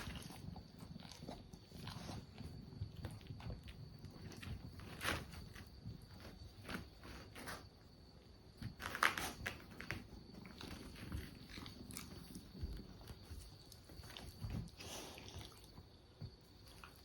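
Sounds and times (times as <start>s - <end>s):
kitten and dog scuffling: 8.5s - 17.0s.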